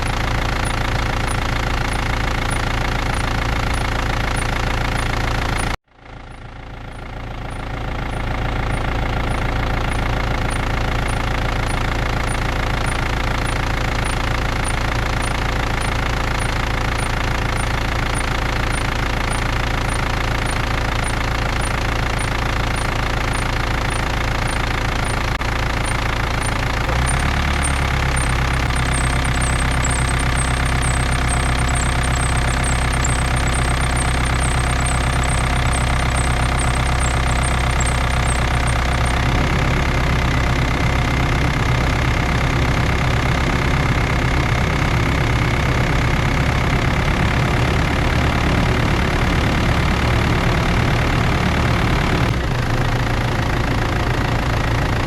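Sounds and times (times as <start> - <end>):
rhythmic high squeak: 0.0 - 5.8, 6.9 - 39.4
diesel engine running: 0.0 - 55.0.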